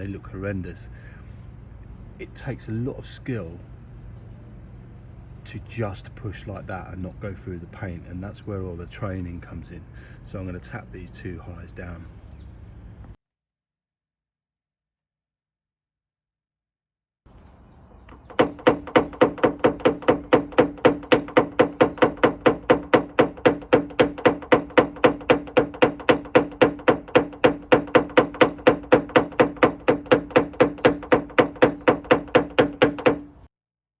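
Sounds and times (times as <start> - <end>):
tool tapping metal panel: 18.2 - 33.3.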